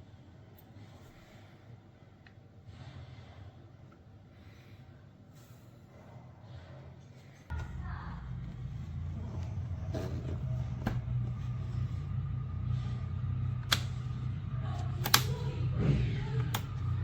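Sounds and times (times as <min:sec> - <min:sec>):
mini fridge humming: 0:07.5 - 0:17.0
sharp clicks: 0:15.0 - 0:15.4.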